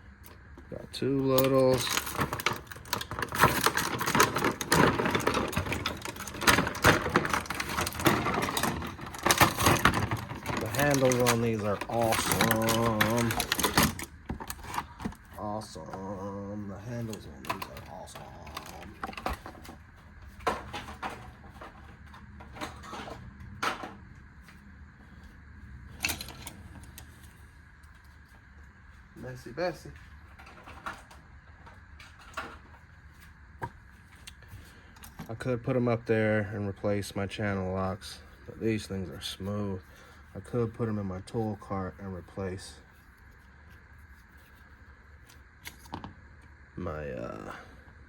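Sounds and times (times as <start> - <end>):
screwdrivers clattering: 1.0 - 16.1, 16.8 - 19.8, 25.9 - 27.1
plastic packaging rustling: 1.4 - 15.8.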